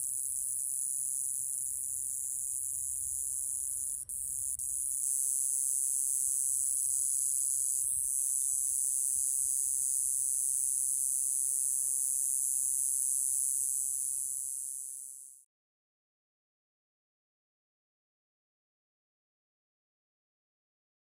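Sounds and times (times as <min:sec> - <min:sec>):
cicada high-pitched buzz: 0:00.0 - 0:15.5.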